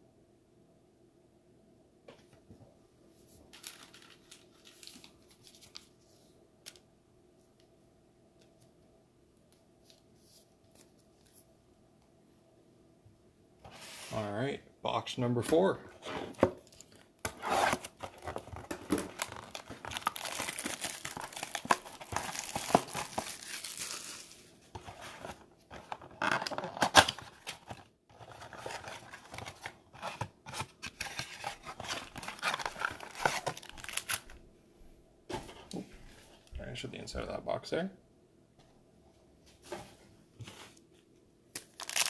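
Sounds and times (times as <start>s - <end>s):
plastic wrap and cardboard tearing: 16.0s - 34.3s, 41.6s - 42.0s.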